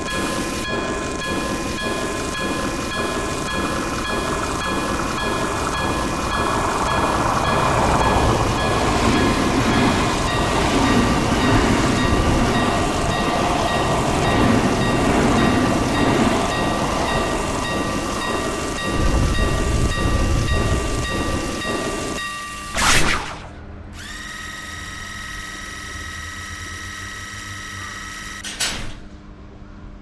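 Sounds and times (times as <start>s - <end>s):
steady electronic tone: 0.0s - 12.7s, 17.2s - 28.3s
crossing warning bell ringing: 0.0s - 22.7s
train running past: 0.0s - 22.7s
short loud burst: 22.8s - 23.8s.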